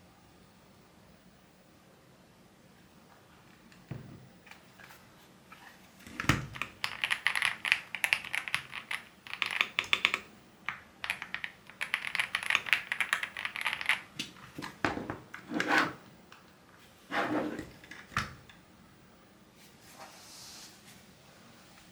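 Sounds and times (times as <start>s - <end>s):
mechanical keyboard clacking: 6.2s - 14.8s.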